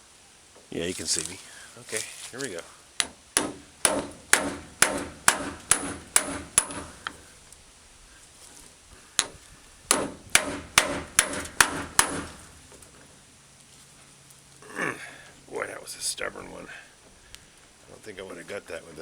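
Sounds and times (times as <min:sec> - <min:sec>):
hammer striking impact driver: 0:03.0 - 0:07.3, 0:09.2 - 0:12.7.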